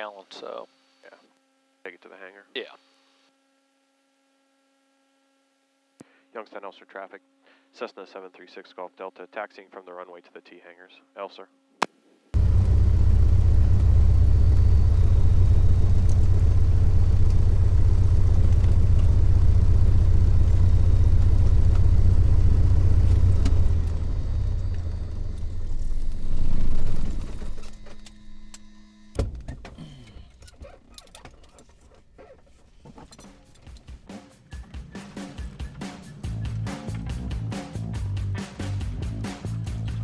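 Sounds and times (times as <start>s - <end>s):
aircraft engine running: 12.4s - 29.1s, 33.6s - 40.0s.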